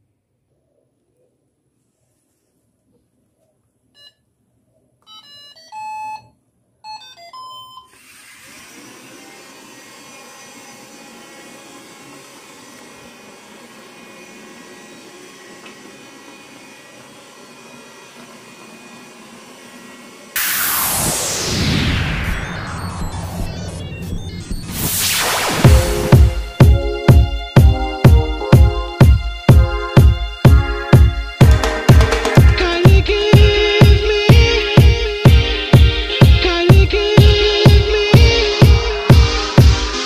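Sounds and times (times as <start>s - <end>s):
vacuum motor and brushes: 7.9s - 23.6s, 24.7s - 27.3s
robot start-up beeps: 20.4s - 27.0s
loud music: 20.4s - 40.0s.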